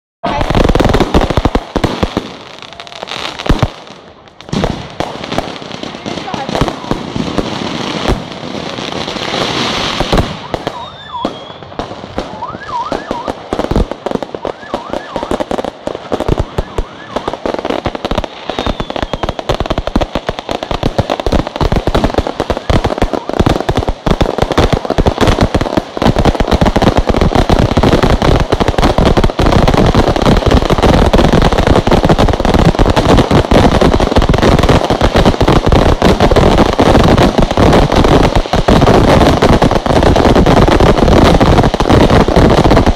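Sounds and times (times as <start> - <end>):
firework bangs and crackles: 0.2 - 42.9
whistling firework glides: 9.5 - 13.4, 14.3 - 15.5, 16.2 - 21.3.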